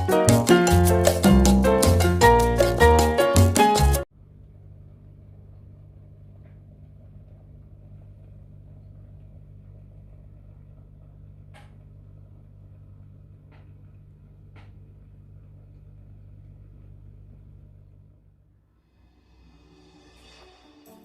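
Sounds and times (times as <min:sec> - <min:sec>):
steady low hum: 0:04.1 - 0:18.7.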